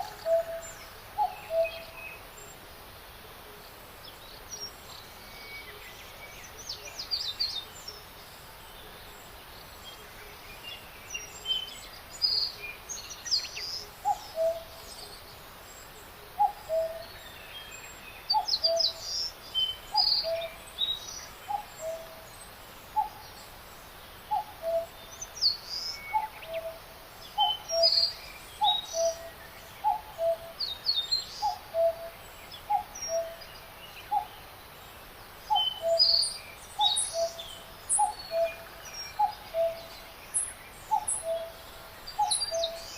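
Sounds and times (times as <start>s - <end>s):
background hiss: 0.0s - 42.9s
birds chirping and whistling: 27.4s - 30.4s, 35.5s - 41.5s, 42.1s - 42.9s.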